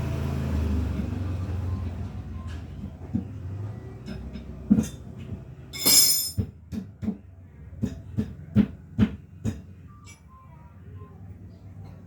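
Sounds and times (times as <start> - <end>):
tyre levers clinking on wheel rim: 5.8 - 6.4.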